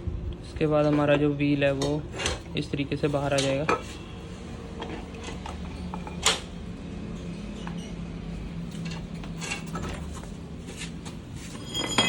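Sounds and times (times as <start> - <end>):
small knocks and clicks of parts: 8.6 - 10.4.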